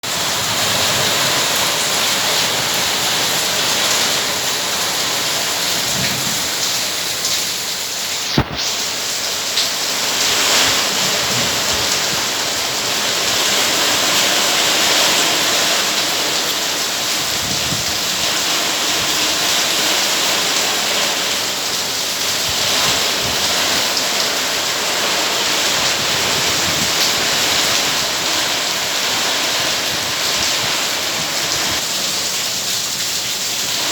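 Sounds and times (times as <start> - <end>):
strong wind: 0.0 - 32.3
heavy rain pouring: 0.0 - 33.9
sharp crack: 8.3 - 8.9.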